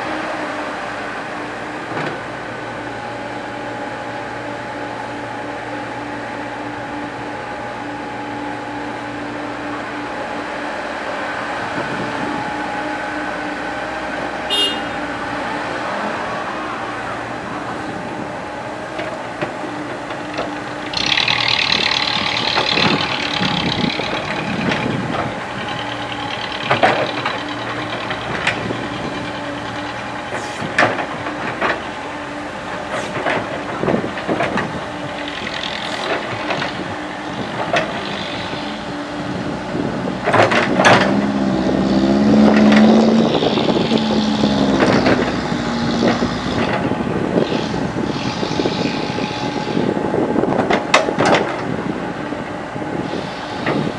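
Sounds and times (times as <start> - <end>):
excavator diesel engine running: 0.0 - 53.9
hiss: 30.4 - 30.8.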